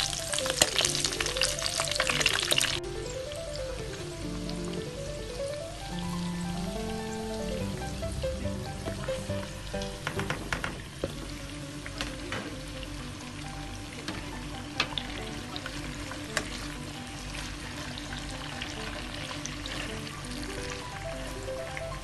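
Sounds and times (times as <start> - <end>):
food sizzling in a pan: 0.0 - 2.8, 11.0 - 21.8
background music: 0.0 - 22.0.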